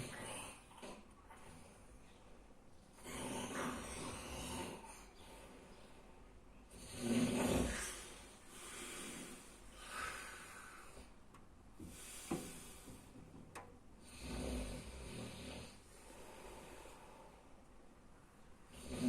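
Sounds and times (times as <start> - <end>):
snort: 0.0 - 1.6, 3.0 - 5.2, 6.7 - 10.3, 18.7 - 19.0
person snoring: 3.0 - 5.1, 6.7 - 10.8, 14.0 - 16.9, 18.7 - 19.0.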